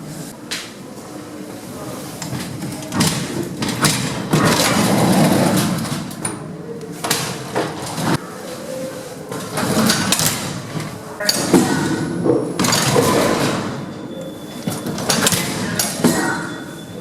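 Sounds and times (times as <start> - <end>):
lift doors sliding and clattering: 0.0 - 17.0
metal knocks and bangs: 2.2 - 6.4, 9.3 - 14.1, 14.7 - 16.7.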